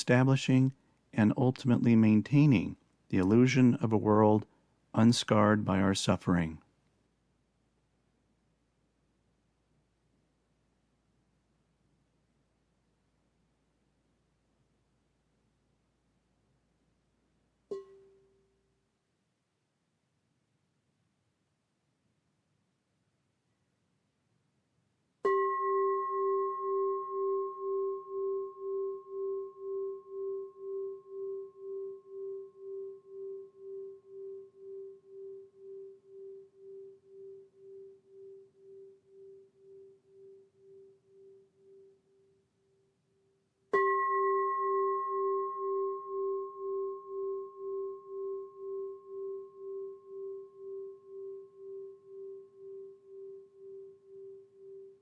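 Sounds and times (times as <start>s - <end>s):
singing bowl ringing: 25.2s - 42.4s, 43.7s - 55.0s.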